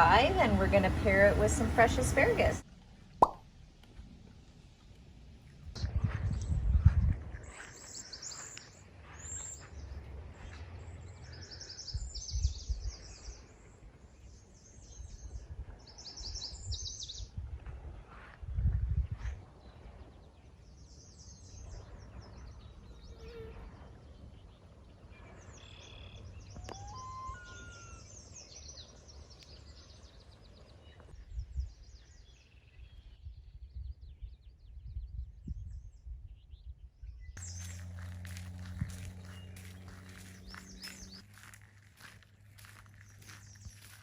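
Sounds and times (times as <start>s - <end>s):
small birds chirping: 0.0s - 2.6s, 25.6s - 32.9s, 37.3s - 44.0s
low steady hum: 0.0s - 3.0s, 37.4s - 44.0s
faint outdoor background noise: 0.0s - 12.2s, 37.4s - 44.0s.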